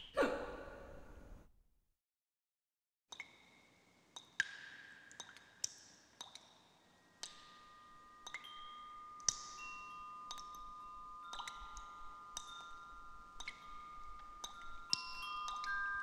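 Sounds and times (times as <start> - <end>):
chime tones ringing: 7.4 - 16.0.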